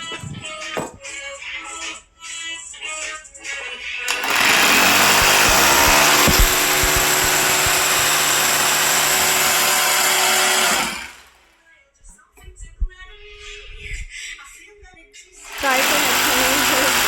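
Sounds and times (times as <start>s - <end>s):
power drill drilling into wall: 4.1s - 11.4s, 15.4s - 17.0s.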